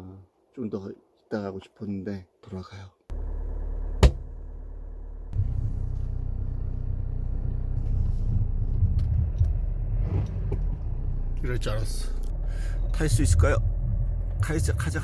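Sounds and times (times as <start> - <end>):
car engine running: 3.1 - 15.0
car rumbling over snow: 3.1 - 15.0
sharp knock: 4.0 - 4.3.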